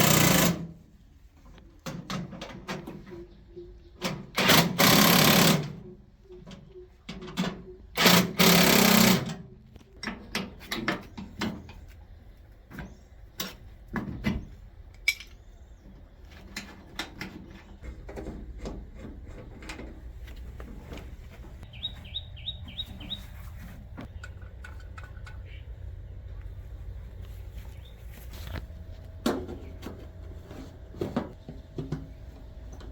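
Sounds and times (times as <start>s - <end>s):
tools and parts clicking: 14.9s - 15.4s, 24.0s - 25.7s.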